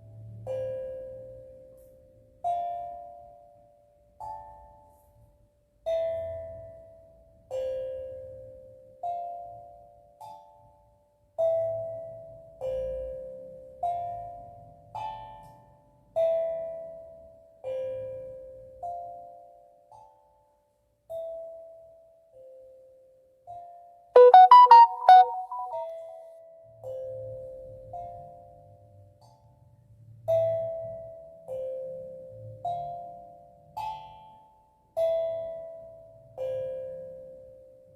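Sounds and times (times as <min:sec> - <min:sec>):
steel tongue drum melody: 0:24.2 - 0:26.1.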